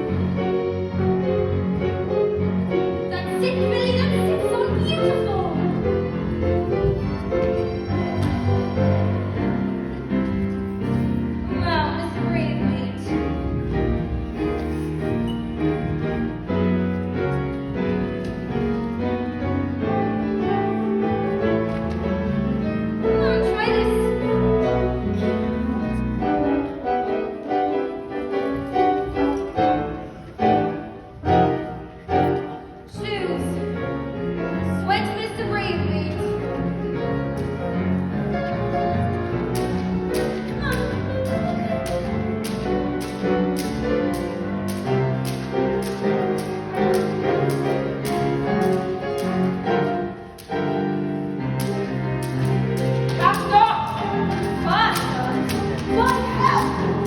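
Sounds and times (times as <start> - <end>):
background music: 0.0 - 57.0.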